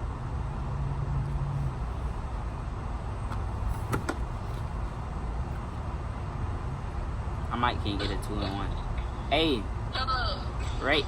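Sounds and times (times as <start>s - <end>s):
low rumble and hiss: 0.0s - 11.0s.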